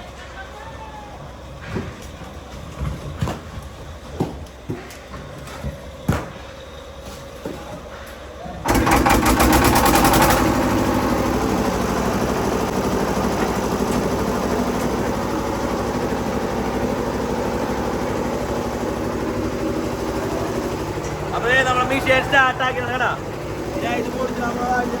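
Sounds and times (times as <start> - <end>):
ice-crushing machine running: 8.6 - 25.0
rapid clattering: 8.7 - 15.8.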